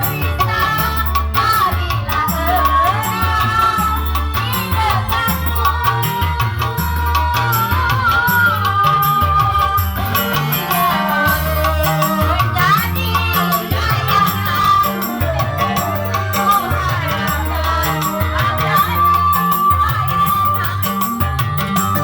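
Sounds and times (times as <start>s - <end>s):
loud music with bass beat: 0.0s - 22.0s.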